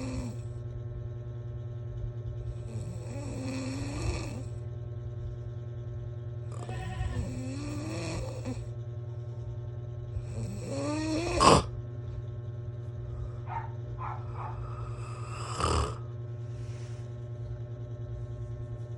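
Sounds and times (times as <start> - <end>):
person snoring: 0.0 - 0.5, 2.6 - 4.6, 6.6 - 8.7, 10.2 - 11.7, 14.5 - 16.1
steady low hum: 0.0 - 18.9.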